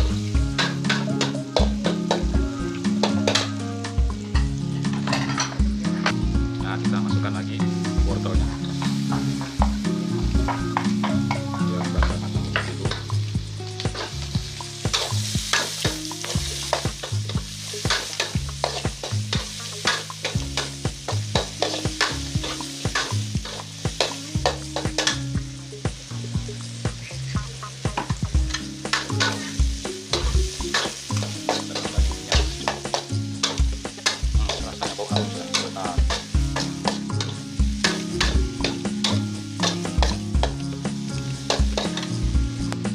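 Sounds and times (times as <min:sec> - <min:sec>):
food sizzling in hot oil: 0:00.0 - 0:42.9
spatula scraping a pan: 0:13.8 - 0:25.2, 0:27.0 - 0:40.6.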